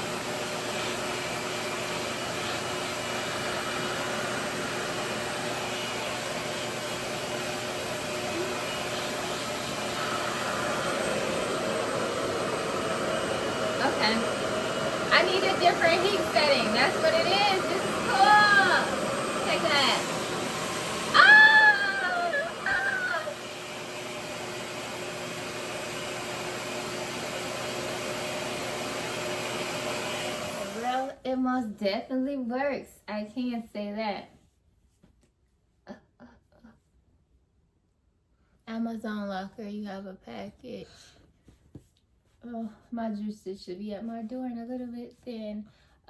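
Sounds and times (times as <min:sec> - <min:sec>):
hair dryer whooshing hiss: 0:00.0 - 0:31.2.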